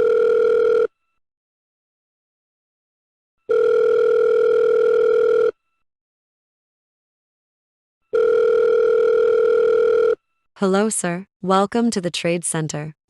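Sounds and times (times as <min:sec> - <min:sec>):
telephone ringing tone: 0:00.0 - 0:01.2, 0:03.4 - 0:05.8, 0:08.1 - 0:10.4.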